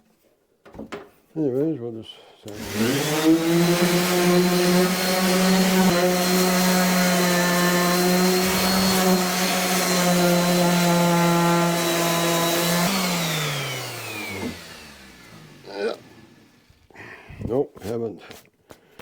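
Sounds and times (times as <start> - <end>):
disc sander on wood: 2.5 - 16.7
motor winding down whine: 11.4 - 16.7.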